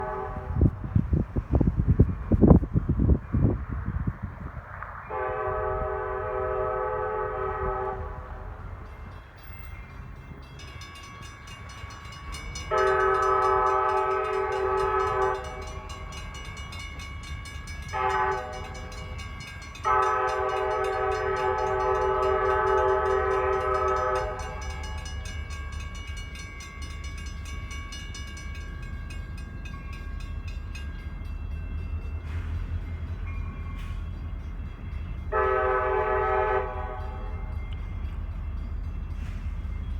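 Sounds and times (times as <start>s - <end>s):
locomotive air horn blasts: 0.0s - 1.0s, 5.1s - 8.8s, 12.7s - 16.1s, 17.8s - 19.1s, 19.8s - 25.1s, 35.3s - 37.5s.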